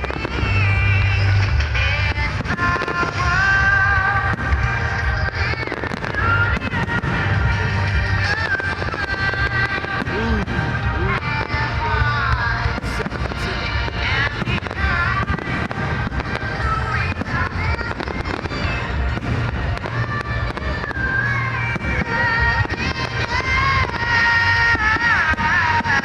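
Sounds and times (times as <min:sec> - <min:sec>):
fireworks cracking and banging: 0:00.0 - 0:26.0
loud music with strong bass: 0:09.0 - 0:20.6.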